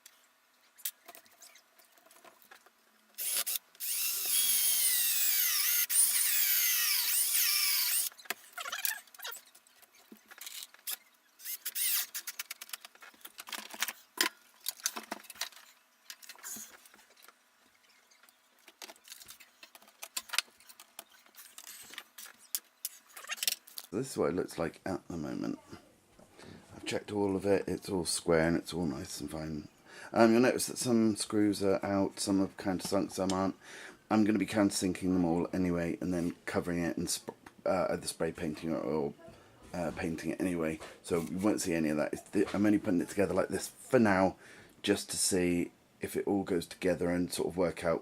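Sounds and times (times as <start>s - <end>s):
power drill whining: 3.2s - 8.1s, 11.4s - 12.2s.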